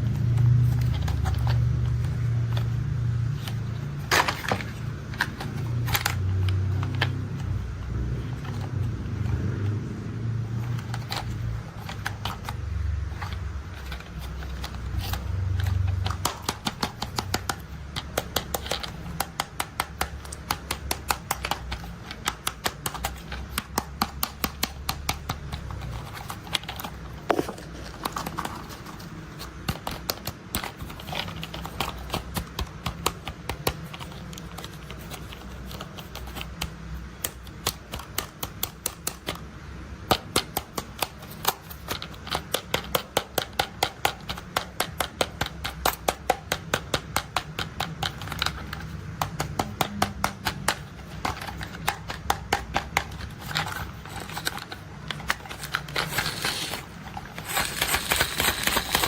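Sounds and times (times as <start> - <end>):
rapid sharp clicks: 40.1 - 59.0.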